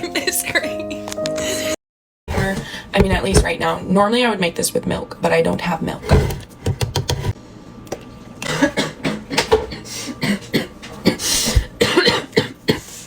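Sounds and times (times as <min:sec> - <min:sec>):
woman coughing: 0:08.4 - 0:12.9.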